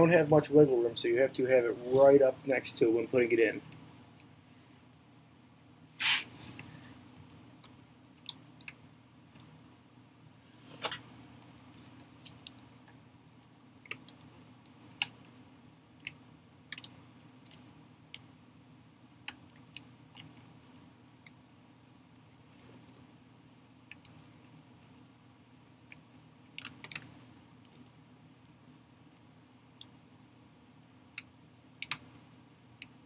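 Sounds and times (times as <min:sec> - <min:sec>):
faint steady low hum: 0:00.0 - 0:33.0
brief scrapes: 0:06.0 - 0:06.5.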